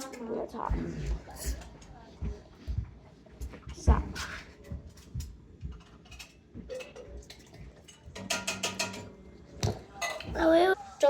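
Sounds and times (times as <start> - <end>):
kitchen things knocking on a counter: 8.1 - 10.4.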